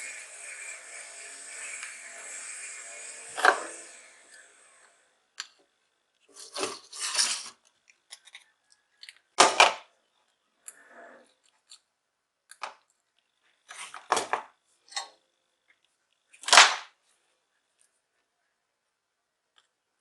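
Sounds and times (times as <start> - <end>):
small tools clicking and scraping: 0.0 - 5.6, 6.2 - 9.3, 10.2 - 11.9.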